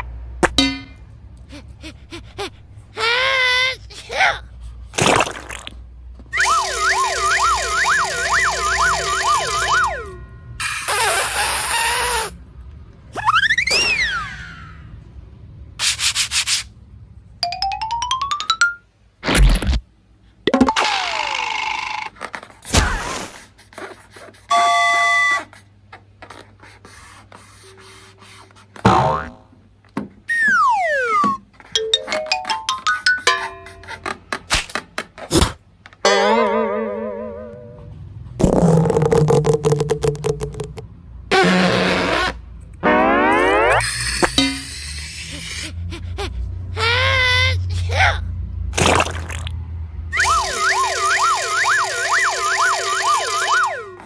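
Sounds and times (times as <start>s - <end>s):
siren-like warbling: 6.4s - 10.8s, 30.3s - 31.4s, 36.1s - 37.9s, 42.8s - 44.6s, 50.1s - 54.0s.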